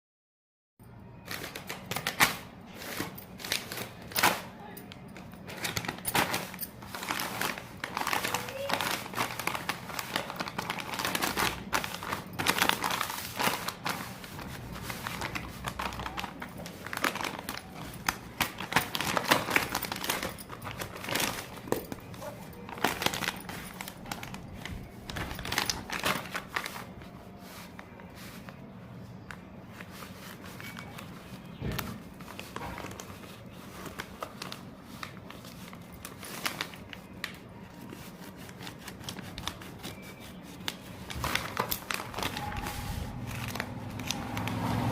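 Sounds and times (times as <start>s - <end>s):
plastic wrapper crinkling: 1.2s - 44.9s.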